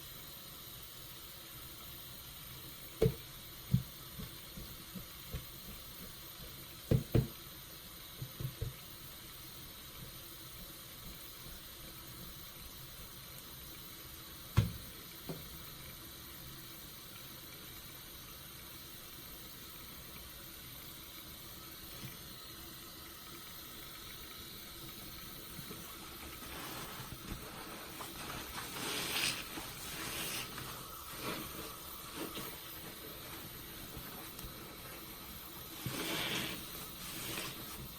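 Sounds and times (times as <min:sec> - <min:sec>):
faint steady hiss: 0:00.0 - 0:37.9
wet sponge squishes: 0:25.6 - 0:37.9.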